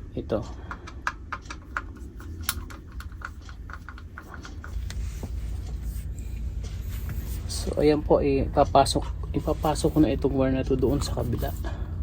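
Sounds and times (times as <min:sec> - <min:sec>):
low steady hum: 0:00.0 - 0:12.0
screwdriver clicks and taps: 0:00.7 - 0:04.9.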